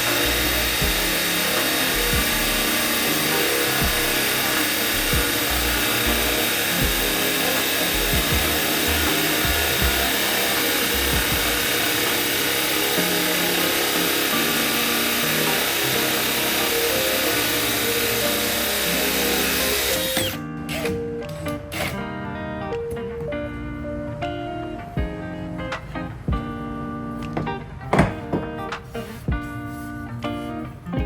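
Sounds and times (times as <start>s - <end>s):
power tool cutting wood: 0.0s - 20.9s
background music: 0.0s - 31.0s.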